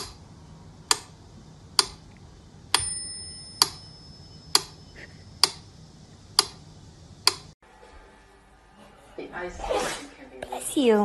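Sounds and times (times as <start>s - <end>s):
sharp clicks: 1.7s - 2.8s, 7.2s - 7.6s
bell-like ringing click: 2.8s - 4.8s.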